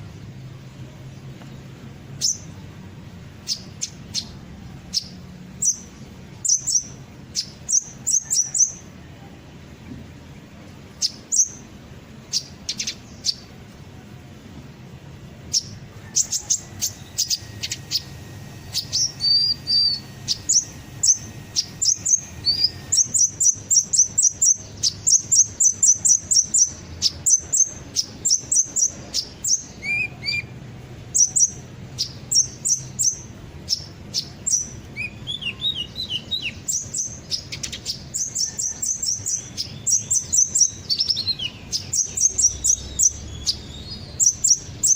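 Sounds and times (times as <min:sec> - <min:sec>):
sunbird high chirps: 0:00.0 - 0:09.3, 0:10.2 - 0:44.9
bird twittering trills: 0:01.0 - 0:02.6, 0:03.4 - 0:08.9, 0:10.9 - 0:13.6, 0:15.4 - 0:44.9.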